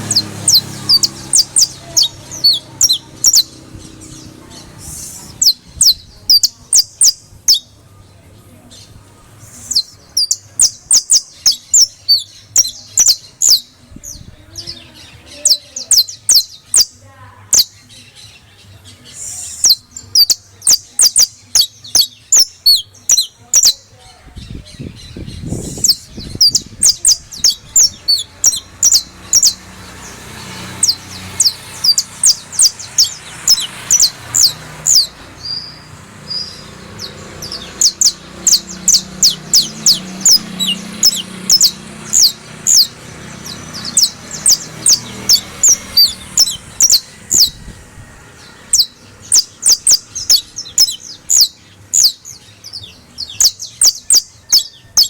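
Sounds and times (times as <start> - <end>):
canary singing: 0.0 - 55.0.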